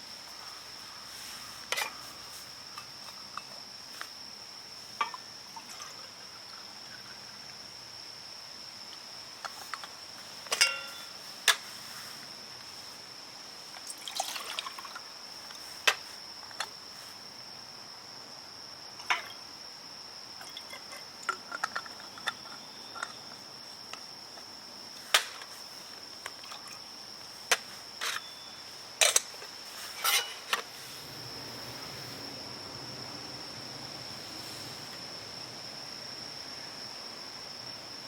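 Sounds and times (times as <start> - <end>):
soft rustles: 9.5 - 13.0.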